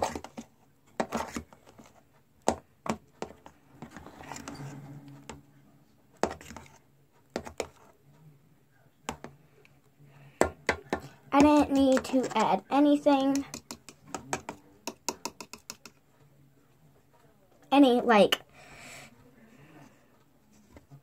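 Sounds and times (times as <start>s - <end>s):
fork clicking and scraping in bowl: 11.4s - 12.5s, 13.2s - 16.0s.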